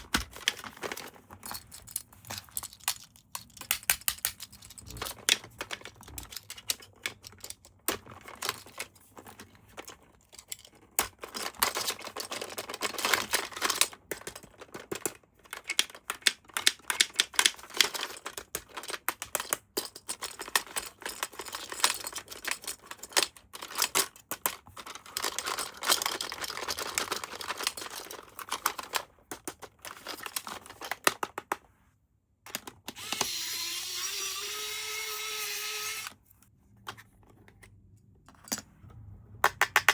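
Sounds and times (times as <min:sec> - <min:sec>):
plastic parts clicking and rustling: 0:00.0 - 0:31.8, 0:32.4 - 0:38.7
small electric toy motor whirring: 0:33.0 - 0:36.2.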